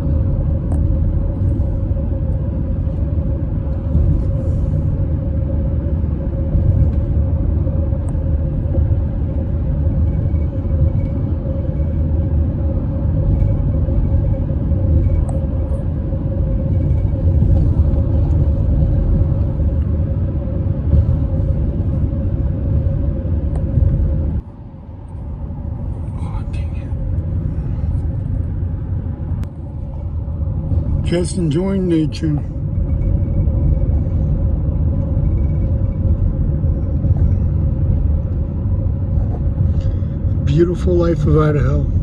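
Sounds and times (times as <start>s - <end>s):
car road and engine rumble: 0.0s - 42.0s.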